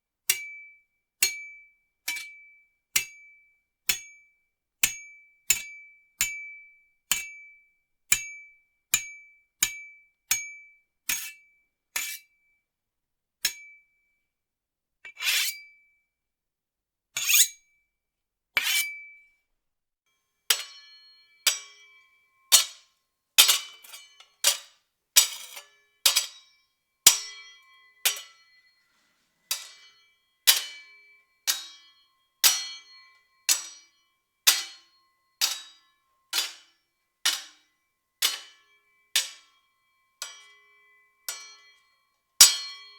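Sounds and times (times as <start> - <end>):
sword blade clangs: 20.5 - 28.8, 29.5 - 36.7, 37.3 - 39.6, 40.2 - 40.7, 41.3 - 41.8, 42.4 - 42.9.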